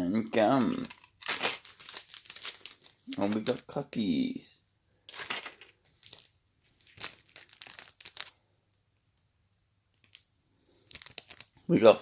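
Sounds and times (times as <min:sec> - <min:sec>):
plastic snack packets crinkling: 0:00.5 - 0:04.1, 0:05.1 - 0:09.3, 0:09.9 - 0:11.7.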